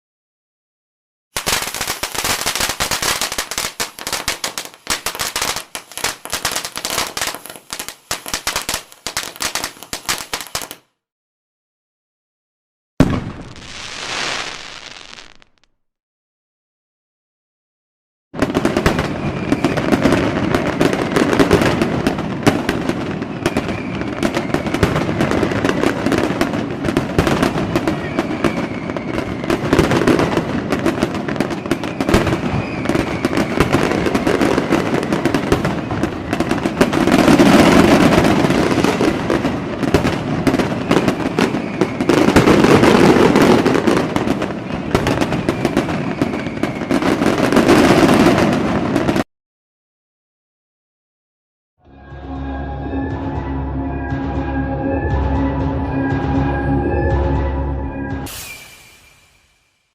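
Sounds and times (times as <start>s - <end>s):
fireworks crackling and popping: 1.4s - 11.0s, 13.0s - 15.8s, 18.4s - 49.3s, 58.3s - 59.8s
falling firework whistles: 13.0s - 15.8s, 18.6s - 49.2s, 57.9s - 59.9s.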